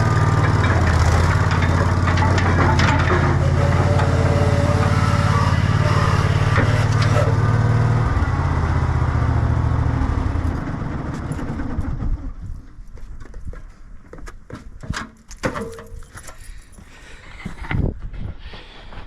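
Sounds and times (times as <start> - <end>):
engine running and shutting off: 0.0 - 12.8.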